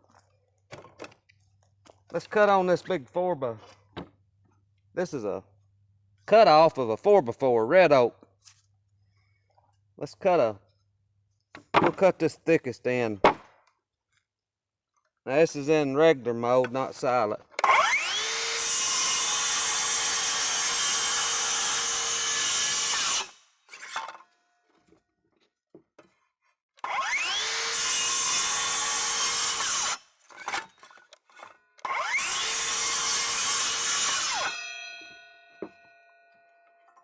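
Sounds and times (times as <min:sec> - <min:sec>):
circular saw cutting wood: 0:17.6 - 0:24.2, 0:26.8 - 0:30.7, 0:31.4 - 0:35.7.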